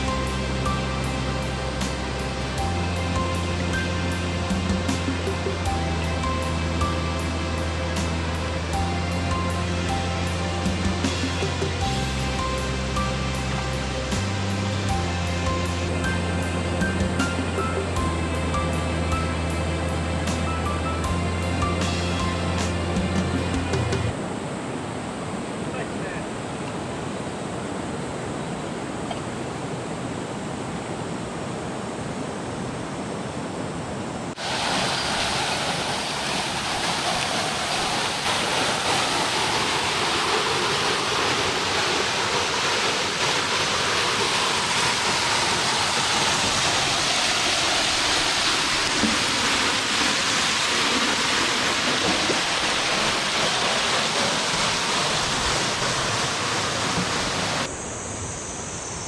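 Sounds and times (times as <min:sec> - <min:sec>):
water falling: 0:00.0 - 0:24.3, 0:34.3 - 0:57.7
stream water rushing: 0:00.0 - 0:59.0.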